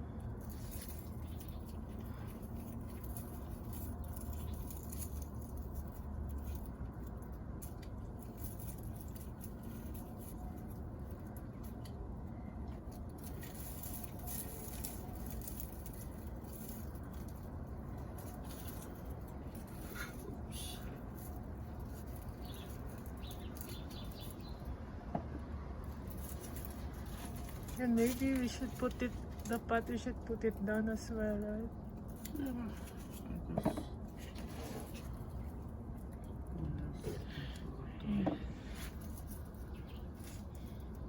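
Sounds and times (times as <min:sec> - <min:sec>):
small crackles and ticks: 0:00.0 - 0:24.9, 0:25.8 - 0:33.4, 0:38.8 - 0:41.0
low steady rumble: 0:00.0 - 0:41.0
plants rustling: 0:00.0 - 0:41.0.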